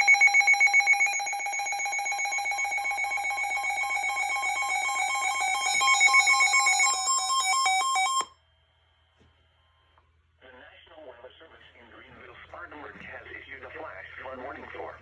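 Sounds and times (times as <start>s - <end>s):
weather radio pulsing alarm: 0.0s - 8.3s.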